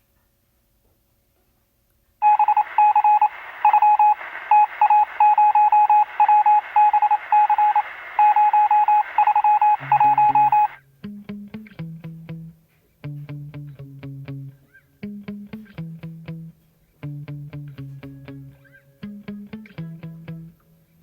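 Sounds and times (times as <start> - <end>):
morse code beeping: 4.9 - 10.8
radio static: 6.0 - 10.8
bass and plucked guitar music: 9.8 - 21.0.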